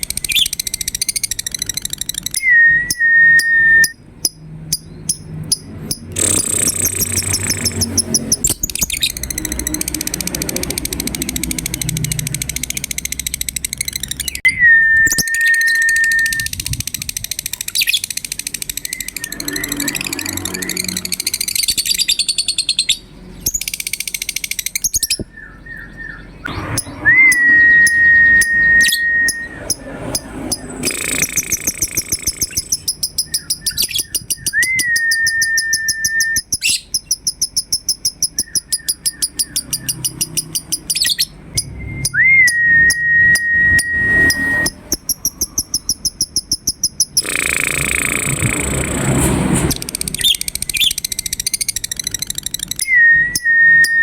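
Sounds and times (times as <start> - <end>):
lovebirds chattering in fast trills: 4.2 - 14.4, 15.1 - 41.8, 42.4 - 48.8, 49.8 - 54.0
long whistled bird note: 14.4 - 16.5, 26.8 - 29.8.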